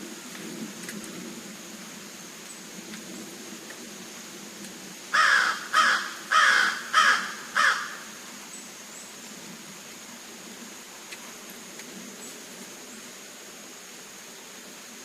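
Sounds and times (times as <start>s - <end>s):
bird calling: 5.2s - 8.1s.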